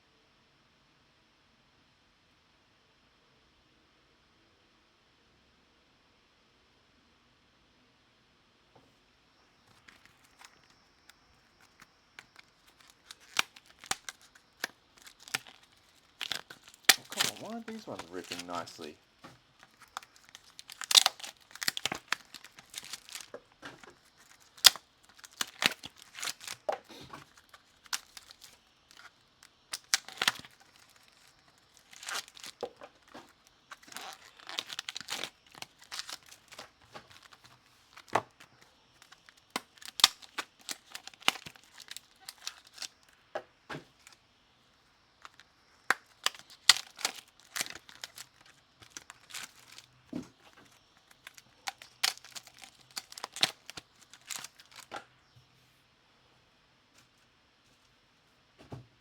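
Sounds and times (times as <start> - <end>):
card pack wrappers tearing and crinkling: 9.7 - 43.1, 43.9 - 44.2, 45.2 - 55.0.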